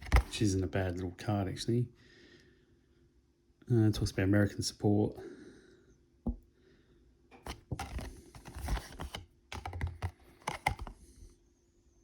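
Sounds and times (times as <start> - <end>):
cardboard cards clicking and rustling: 0.0 - 0.5, 7.4 - 11.1.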